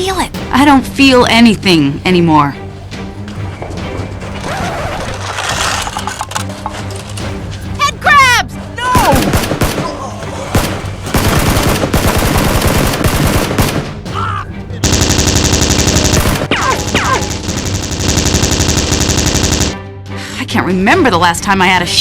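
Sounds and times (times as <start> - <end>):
automatic gunfire: 9.0 - 9.9, 10.6 - 14.0, 14.8 - 19.8.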